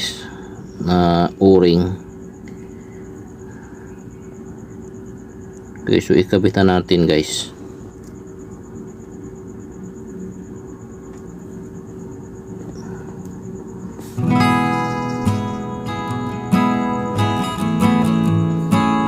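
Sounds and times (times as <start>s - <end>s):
steady low hum: 0.0s - 19.0s
strummed acoustic guitar music: 14.0s - 19.0s.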